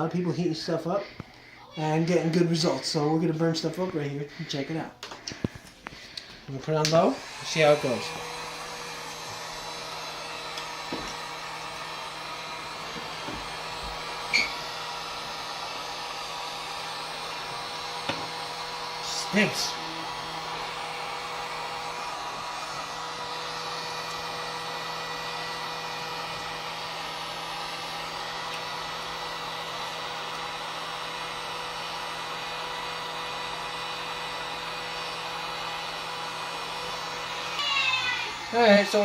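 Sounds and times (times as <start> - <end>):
hot-air tool blowing: 0.0 - 39.0.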